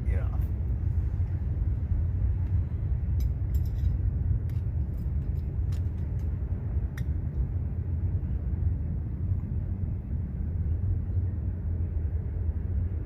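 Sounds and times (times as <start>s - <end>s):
steady low rumble: 0.0s - 13.0s
metal parts clicking and clinking: 3.1s - 6.3s.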